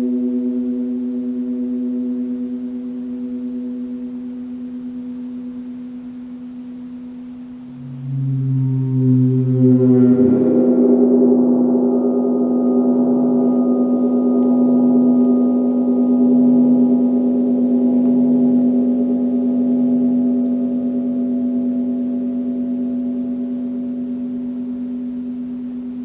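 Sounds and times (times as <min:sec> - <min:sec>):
gong ringing: 0:07.7 - 0:23.1.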